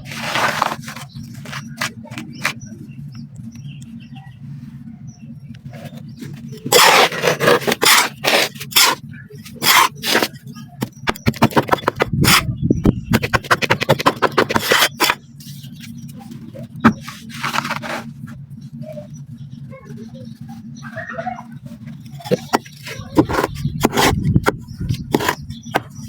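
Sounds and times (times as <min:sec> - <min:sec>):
sand crunching by hand: 0:00.0 - 0:02.5
steady low hum: 0:00.0 - 0:26.0.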